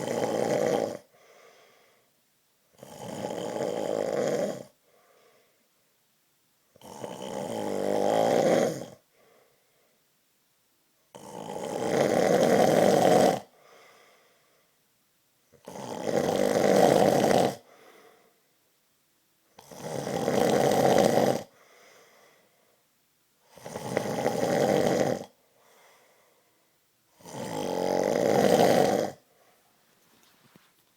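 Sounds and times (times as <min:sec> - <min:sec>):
man snoring loudly: 0:00.0 - 0:01.1, 0:02.7 - 0:04.8, 0:06.8 - 0:09.0, 0:11.1 - 0:13.5, 0:15.6 - 0:17.7, 0:19.6 - 0:21.5, 0:23.5 - 0:25.3, 0:27.1 - 0:29.2
faint breath out: 0:01.1 - 0:02.2, 0:04.8 - 0:05.7, 0:09.1 - 0:10.0, 0:13.5 - 0:14.8, 0:17.6 - 0:18.5, 0:21.5 - 0:22.8, 0:25.5 - 0:26.7.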